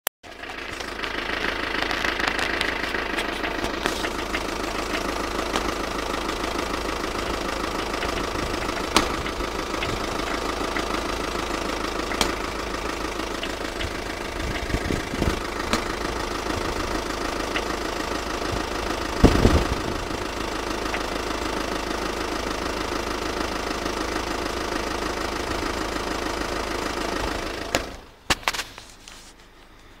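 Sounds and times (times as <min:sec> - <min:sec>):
engine knocking: 0:00.2 - 0:28.6
car engine idling: 0:00.2 - 0:30.0
loud thumps: 0:07.3 - 0:10.9, 0:12.1 - 0:17.0, 0:19.1 - 0:20.2.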